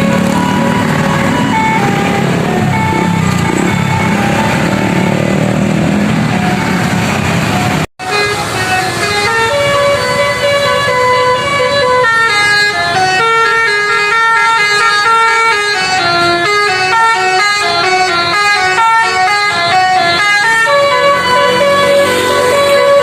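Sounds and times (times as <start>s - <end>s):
multi-tone air horn tune: 8.0s - 23.0s.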